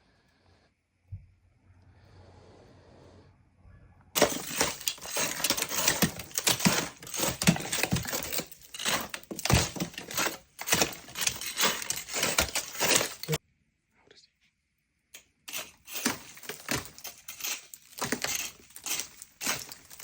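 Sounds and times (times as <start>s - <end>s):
material crinkling and rustling: 4.2s - 13.4s, 15.5s - 20.0s.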